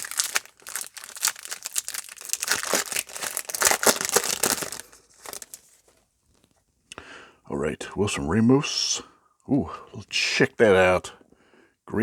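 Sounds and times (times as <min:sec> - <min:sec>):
plastic wrapper crinkling and tearing: 0:00.0 - 0:05.9.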